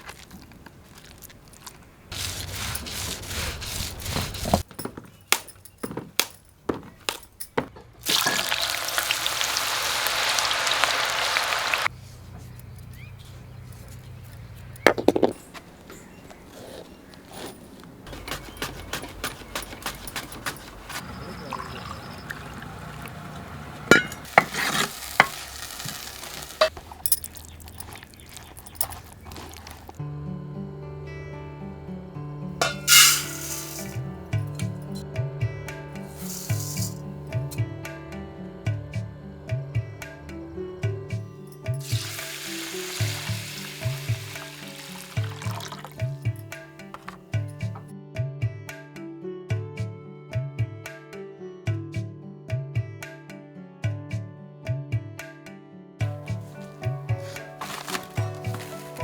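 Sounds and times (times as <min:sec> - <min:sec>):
food sizzling: 0:08.0 - 0:11.9, 0:23.9 - 0:26.8, 0:32.6 - 0:34.0, 0:36.0 - 0:37.0, 0:41.8 - 0:46.2, 0:56.4 - 0:59.0
metal spoon scraping a pan: 0:23.9 - 0:26.8, 0:32.6 - 0:34.0, 0:36.1 - 0:37.0
loud steady hiss: 0:32.7 - 0:34.0.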